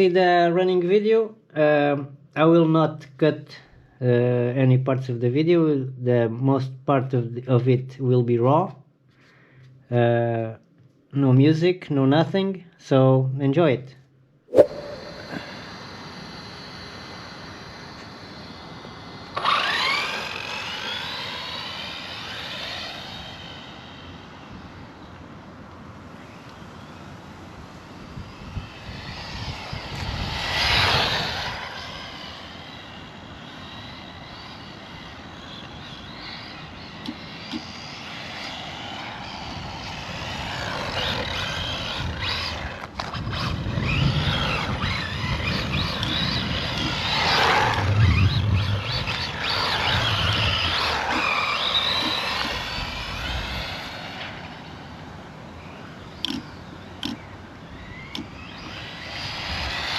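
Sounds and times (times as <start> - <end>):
rc car motor whining: 18.9 - 24.7, 28.6 - 55.0, 55.6 - 59.9.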